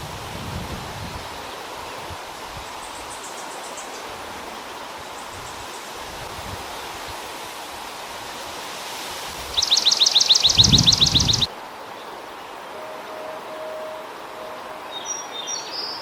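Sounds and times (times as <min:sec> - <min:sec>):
background hiss: 0:00.0 - 0:16.0
sparrow singing trill: 0:09.6 - 0:11.5.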